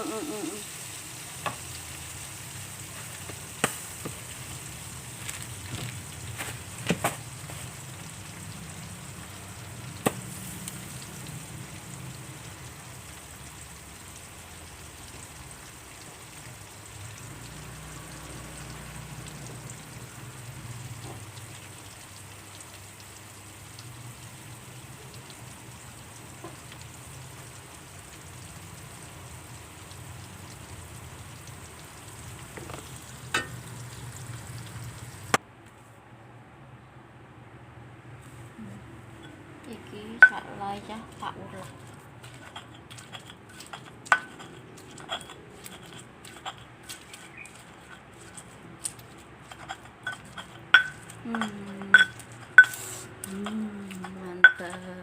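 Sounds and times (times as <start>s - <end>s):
food sizzling in hot oil: 0.0s - 35.4s, 39.1s - 55.0s
utensil clicking against pan: 41.9s - 55.0s.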